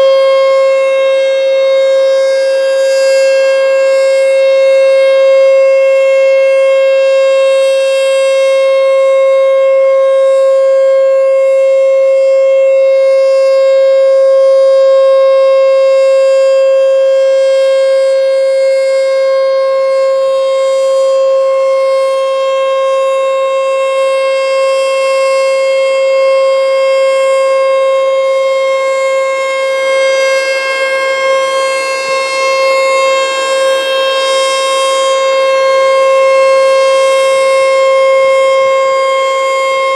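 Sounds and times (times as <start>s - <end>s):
outdoor warning siren steady tone: 0.0s - 39.9s.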